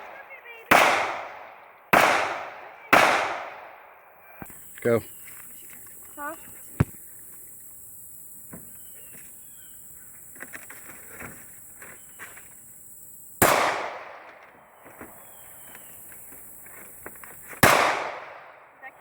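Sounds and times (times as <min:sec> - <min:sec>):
loud gunshot with echo: 0:00.0 - 0:04.0, 0:13.4 - 0:14.3, 0:17.6 - 0:18.6.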